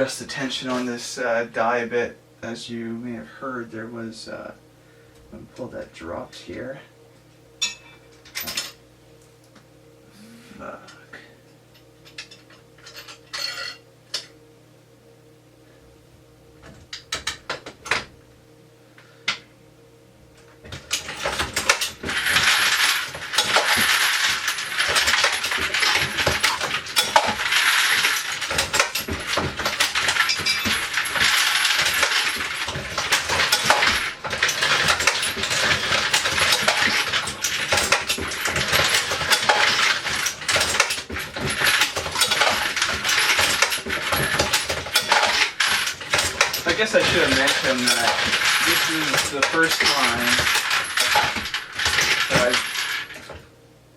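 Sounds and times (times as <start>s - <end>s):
metal cases clattering in feeder: 20.6s - 53.4s.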